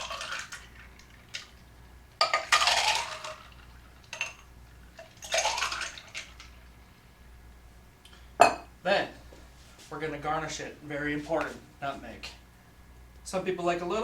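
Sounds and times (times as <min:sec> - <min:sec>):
ice clattering in poured cocktail: 0:00.0 - 0:01.6, 0:02.2 - 0:06.7
ice clinks: 0:02.2 - 0:06.6.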